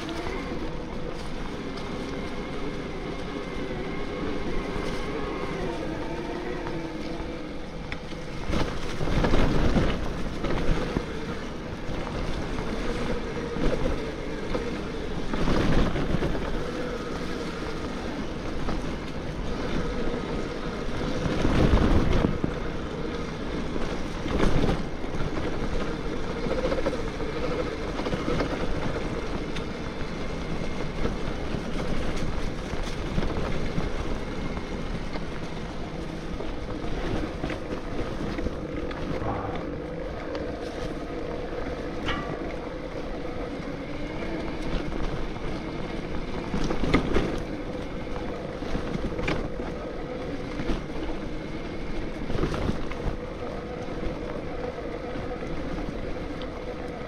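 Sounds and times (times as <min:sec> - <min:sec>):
electric bike motor whining: 0:00.0 - 0:57.0
wind on microphone: 0:00.0 - 0:57.0.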